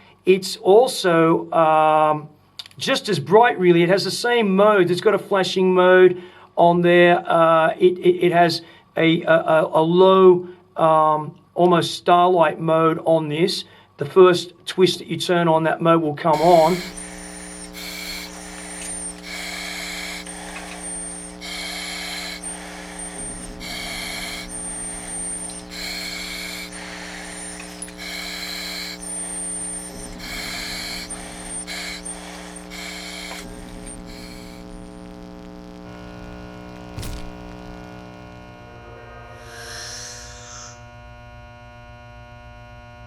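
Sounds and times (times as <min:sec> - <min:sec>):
steady electrical hum: 0:16.4 - 0:39.1
flashlight click: 0:36.9 - 0:37.8.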